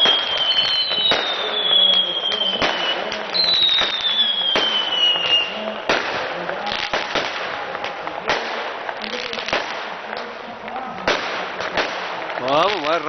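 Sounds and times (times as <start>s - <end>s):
whistling fireworks: 0.0s - 10.2s
fireworks popping and cracking: 0.0s - 13.0s.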